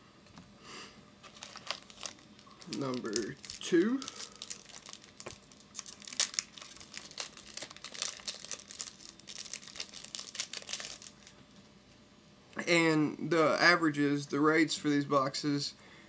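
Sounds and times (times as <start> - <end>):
plastic wrapper crinkling: 1.2 - 11.4.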